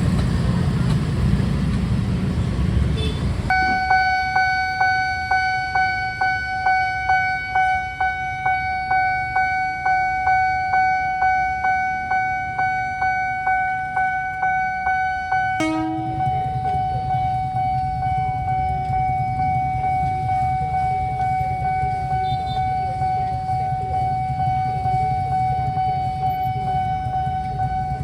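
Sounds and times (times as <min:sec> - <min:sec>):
road traffic noise: 0:00.0 - 0:28.0
level crossing pulsing alarm: 0:03.5 - 0:28.0.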